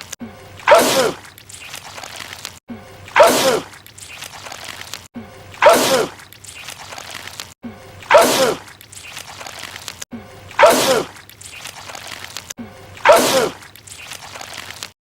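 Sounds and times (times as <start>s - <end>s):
man sneezing: 0.7s - 1.2s, 3.2s - 3.7s, 5.6s - 6.2s, 8.1s - 8.6s, 10.6s - 11.1s, 13.0s - 13.6s.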